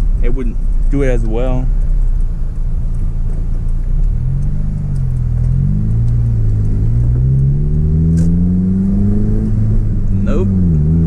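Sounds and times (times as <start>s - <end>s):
car engine accelerating: 0.0s - 11.0s.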